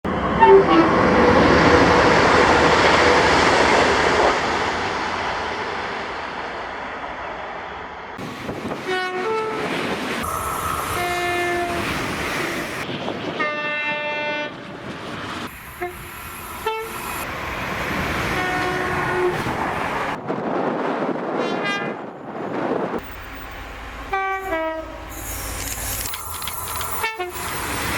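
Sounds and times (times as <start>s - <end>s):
train rumbling on rails: 0.0s - 27.9s
train horn blasts: 0.3s - 1.5s, 8.8s - 9.7s, 10.9s - 12.0s, 13.4s - 14.6s, 15.8s - 17.2s, 18.2s - 19.8s, 21.4s - 22.0s, 24.1s - 25.2s, 26.9s - 27.6s.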